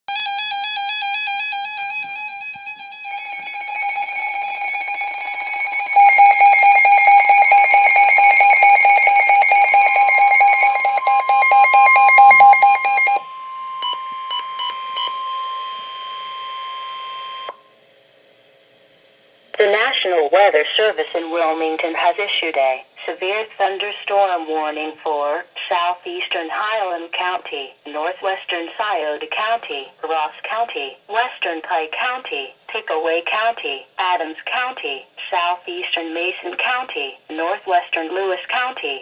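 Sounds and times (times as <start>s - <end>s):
rapidly pulsing alarm: 0.1s - 17.7s
warbling electronic tone: 3.1s - 14.1s
short beeps: 3.7s - 15.7s.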